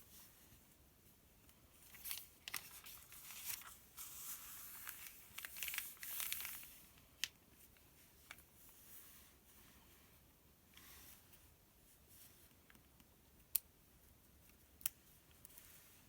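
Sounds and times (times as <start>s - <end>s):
paper pages rustling: 1.8s - 6.9s.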